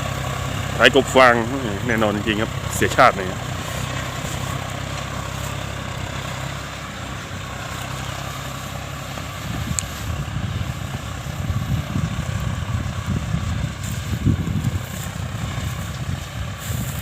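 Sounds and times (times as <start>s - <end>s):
tractor diesel engine running: 0.0s - 17.0s.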